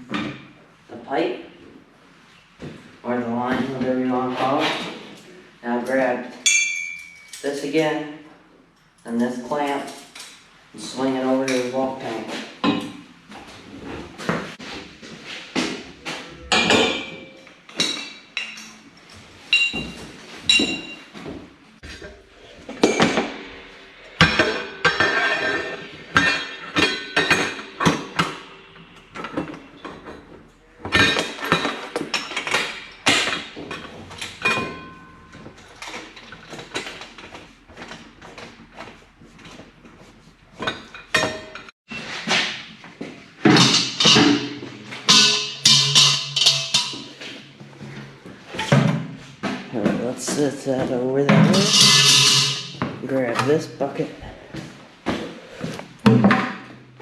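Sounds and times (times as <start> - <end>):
metal pipes clanking together: 5.9 - 7.6, 16.3 - 38.1, 40.6 - 42.7, 43.4 - 49.7, 51.2 - 53.7.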